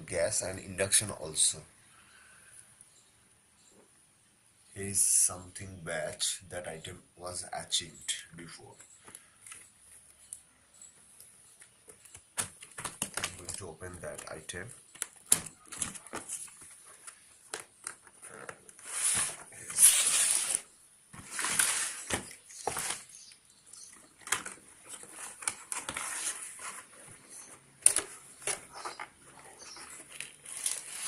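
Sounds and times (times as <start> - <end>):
cardboard packaging clicks and knocks: 11.8 - 18.6, 24.0 - 27.2
packaging rustling: 11.9 - 31.0.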